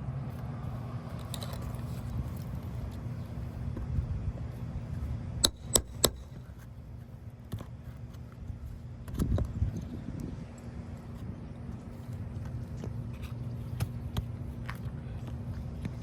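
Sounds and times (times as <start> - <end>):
steady low hum: 0.0 - 16.0
sharp metallic clicks: 5.4 - 6.3.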